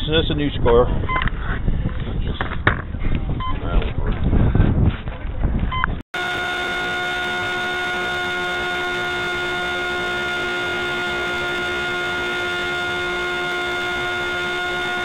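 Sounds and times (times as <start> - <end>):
steady hum with overtones: 6.2 - 15.0.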